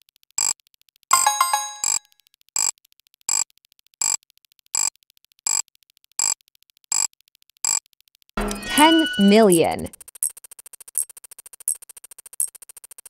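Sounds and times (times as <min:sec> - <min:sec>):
ringing multi-tone chime: 0:01.1 - 0:02.0, 0:08.4 - 0:09.9.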